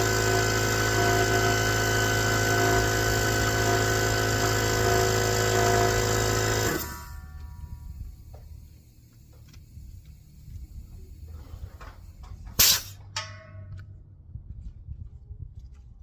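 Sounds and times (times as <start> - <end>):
metal clank with ring: 12.6 - 13.8.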